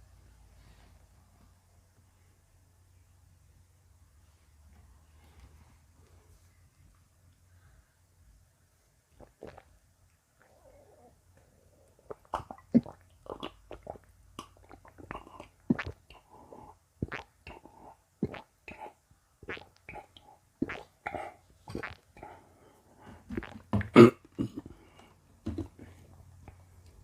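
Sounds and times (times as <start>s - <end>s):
person gulping a drink: 9.2s - 9.8s, 10.4s - 22.4s, 23.2s - 25.8s.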